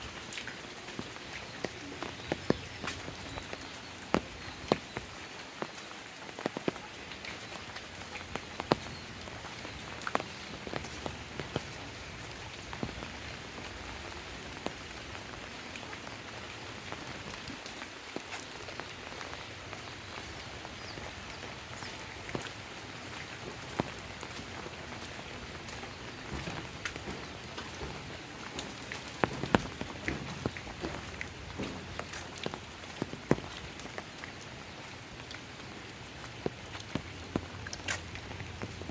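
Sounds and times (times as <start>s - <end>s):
steady rain falling: 0.0s - 38.9s
water drops dripping close by: 0.0s - 38.9s.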